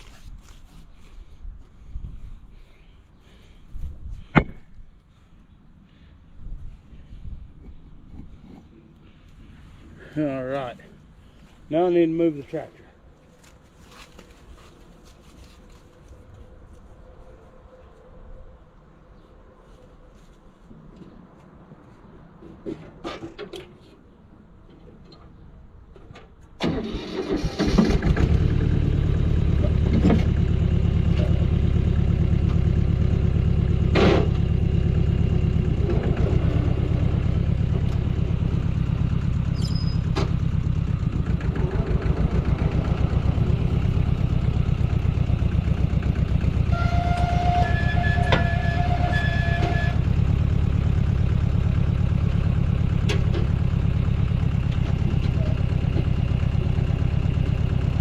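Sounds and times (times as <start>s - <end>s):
tractor engine running: 26.6s - 58.0s.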